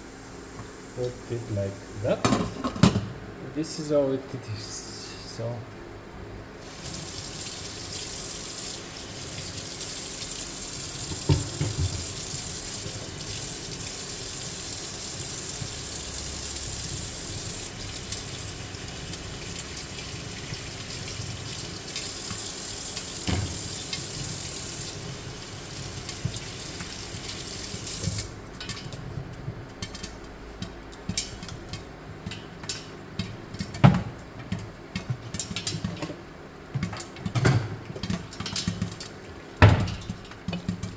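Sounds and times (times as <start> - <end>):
oil sizzling in a pot: 0.0 - 2.4, 6.6 - 36.0, 36.8 - 40.9
popcorn popping: 10.8 - 40.9.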